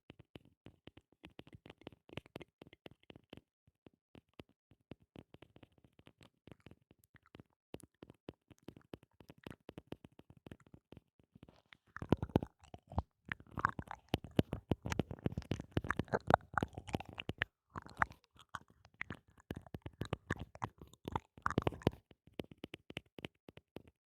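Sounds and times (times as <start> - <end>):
wet mouth clicks: 11.5 - 23.9.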